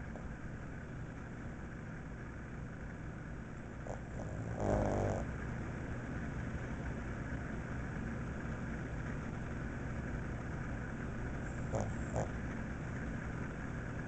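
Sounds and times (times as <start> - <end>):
dog snoring: 3.8 - 5.5, 11.4 - 12.4.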